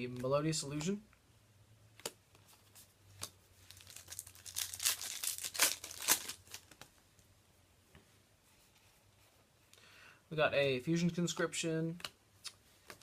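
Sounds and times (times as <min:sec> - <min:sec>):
plastic foil wrapper crinkling: 0:03.6 - 0:06.9.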